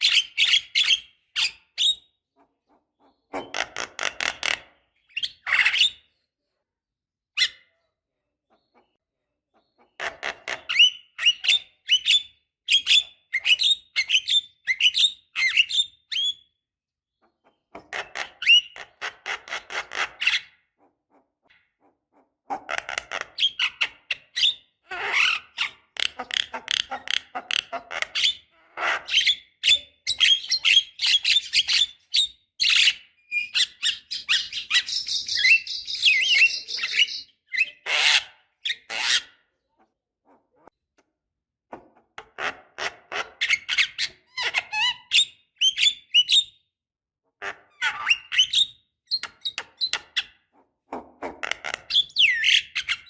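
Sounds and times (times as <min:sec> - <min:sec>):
myna chattering and whistling: 0:33.4 - 0:37.8.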